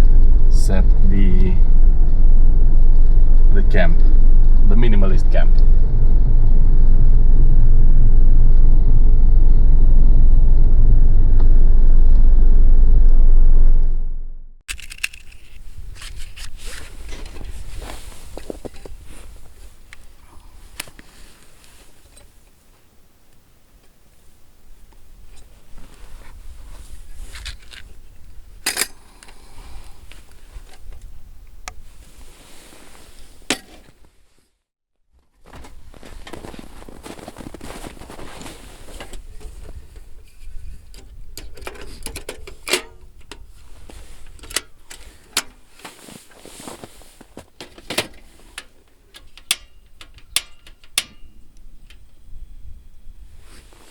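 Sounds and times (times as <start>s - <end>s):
diesel engine rumbling in cabin: 0.0s - 14.6s
camping gear clicks and knocks: 14.7s - 17.6s, 28.6s - 29.4s, 40.3s - 46.4s, 47.2s - 51.3s.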